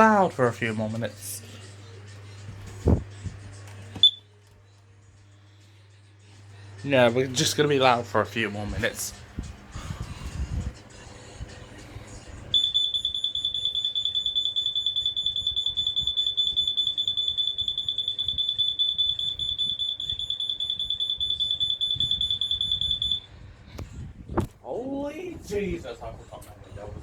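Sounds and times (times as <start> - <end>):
smoke alarm tone: 4.0 - 4.3, 12.5 - 23.3.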